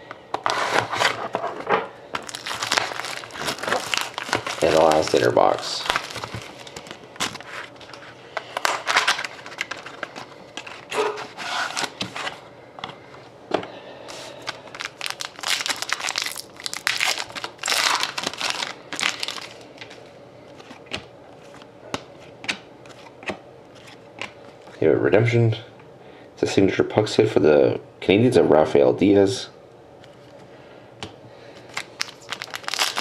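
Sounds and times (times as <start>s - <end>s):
card wrapper tearing and crinkling: 2.2s - 12.1s, 14.1s - 20.0s, 31.7s - 33.0s.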